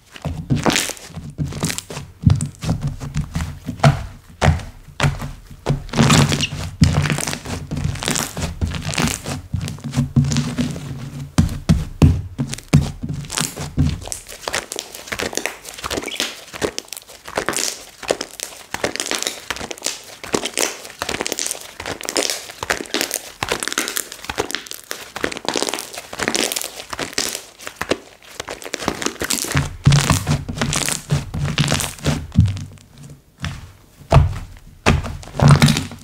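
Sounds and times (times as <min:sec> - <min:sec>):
slime crackling and popping: 0:00.5 - 0:02.8, 0:05.8 - 0:10.5, 0:12.5 - 0:32.6, 0:34.1 - 0:36.0
low thuds: 0:33.5 - 0:36.0.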